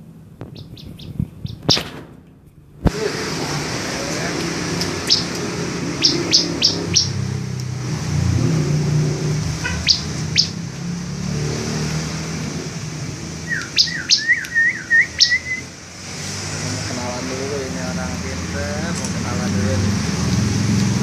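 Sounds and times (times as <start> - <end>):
bird chipping and calling: 0.4 - 2.0, 4.3 - 7.7, 9.1 - 10.8, 13.2 - 15.9.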